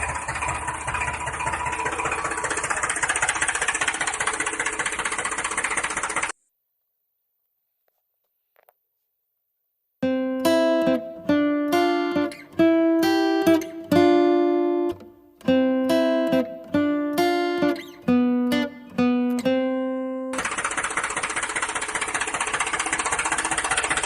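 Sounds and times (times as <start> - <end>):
plucked acoustic guitar melody: 10.0 - 20.5.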